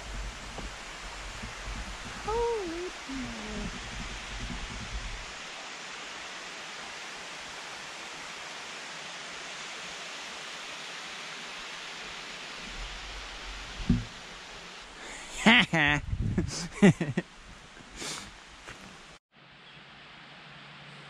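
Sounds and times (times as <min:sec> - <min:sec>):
waterfall rushing: 0:05.2 - 0:15.6.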